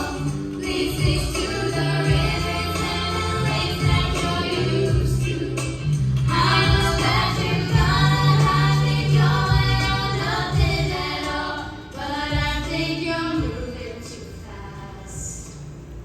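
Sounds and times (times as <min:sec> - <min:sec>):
low bass line: 0:00.0 - 0:11.1
women singing pop music: 0:00.0 - 0:15.7.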